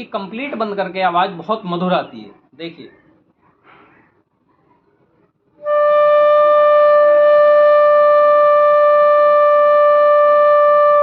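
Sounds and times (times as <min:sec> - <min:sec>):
bamboo flute long steady note: 0:05.6 - 0:11.0.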